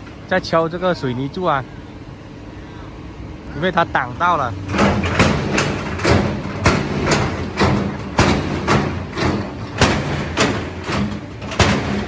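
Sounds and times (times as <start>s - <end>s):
diesel engine running: 0.0s - 12.0s
excavator striking concrete post: 4.6s - 12.0s.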